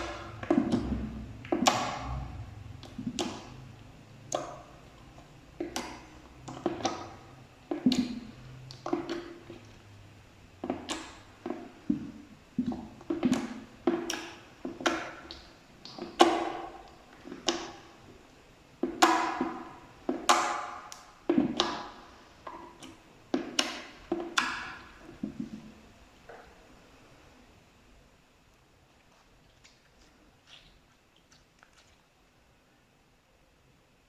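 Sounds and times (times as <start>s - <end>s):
slime popping and squelching: 0.0s - 10.0s, 10.6s - 18.1s, 18.8s - 25.7s.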